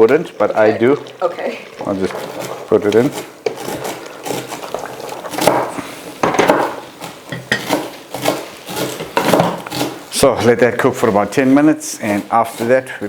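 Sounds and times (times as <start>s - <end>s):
spoon scraping cooking pot: 0.0s - 10.1s.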